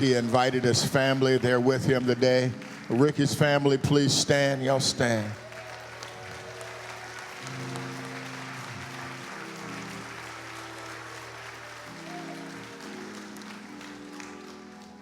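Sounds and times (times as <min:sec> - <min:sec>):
congregation applauding: 0:00.0 - 0:15.0
music of long held chords: 0:05.4 - 0:15.0.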